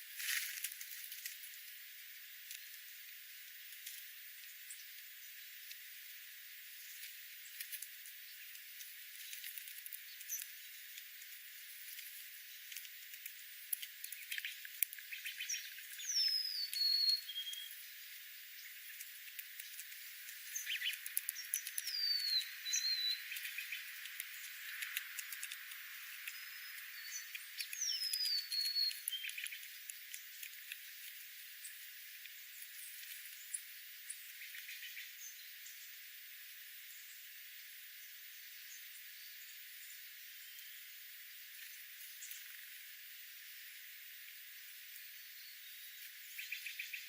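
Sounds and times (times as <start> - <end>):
faint clicks and crackle: 0.1 - 2.9, 3.5 - 34.9
bird's high whistled call: 15.2 - 17.7, 21.8 - 23.7, 26.4 - 29.5.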